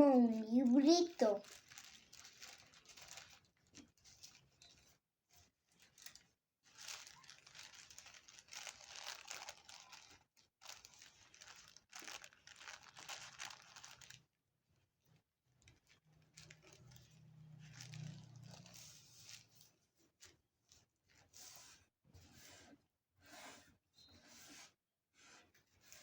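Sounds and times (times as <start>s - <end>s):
tissue paper rustling: 0.0s - 14.2s, 15.7s - 19.7s.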